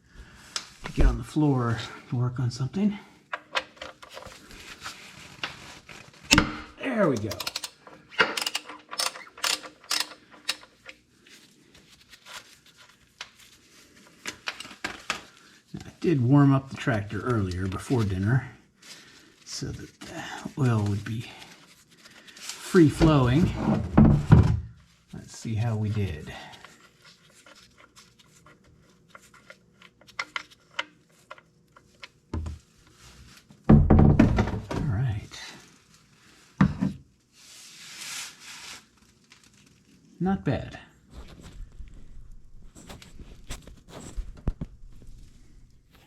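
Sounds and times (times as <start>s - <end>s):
socket wrench clicking: 7.4s - 10.6s.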